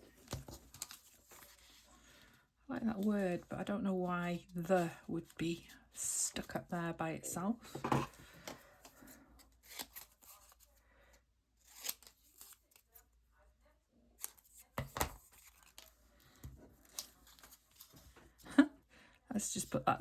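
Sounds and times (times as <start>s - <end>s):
paper rustling: 0.1s - 2.3s, 14.2s - 18.4s
scissors snipping paper: 11.6s - 13.0s.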